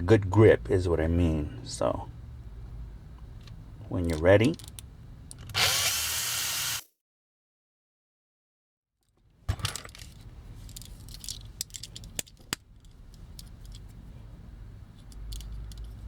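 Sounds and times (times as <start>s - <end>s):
small toy parts clicking and rattling: 4.0s - 5.6s, 9.6s - 14.0s, 15.0s - 16.0s
drill running: 5.5s - 6.8s.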